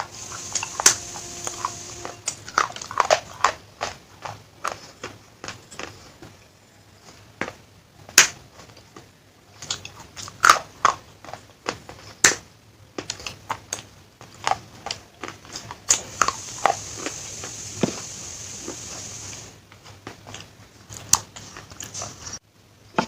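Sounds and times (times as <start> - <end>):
clay pieces crunching in mouth: 9.6 - 17.2.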